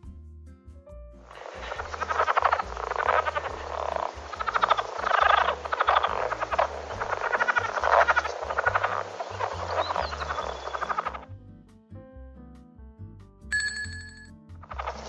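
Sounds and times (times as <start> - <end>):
animal pulsed trills: 1.4 - 11.2.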